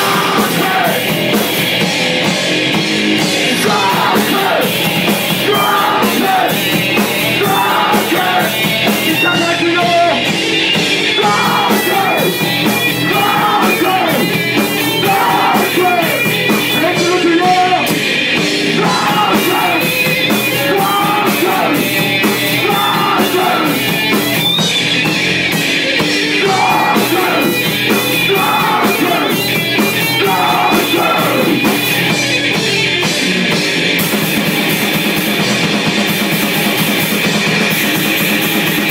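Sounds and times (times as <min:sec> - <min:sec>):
yelled vocals: 0:00.0 - 0:34.0
metal band playing live: 0:00.0 - 0:38.9.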